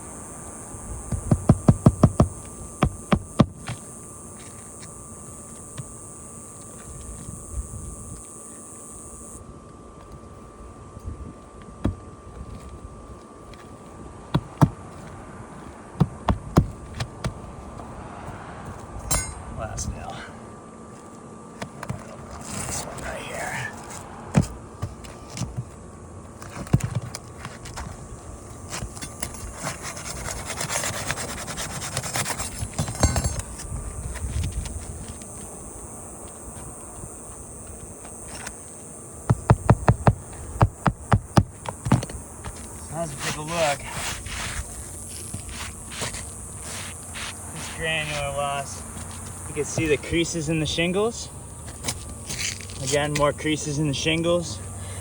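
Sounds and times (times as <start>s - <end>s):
steady high hiss: 0.0s - 9.5s, 28.0s - 55.0s
hammer striking nails into shingles: 1.1s - 3.8s, 30.5s - 33.6s, 39.2s - 42.6s
scraping on asphalt shingles: 20.9s - 55.0s.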